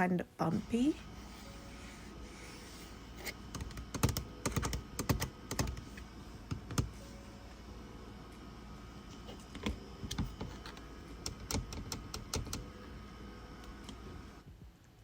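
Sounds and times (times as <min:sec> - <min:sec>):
keyboard keys clacking: 0:03.2 - 0:07.0.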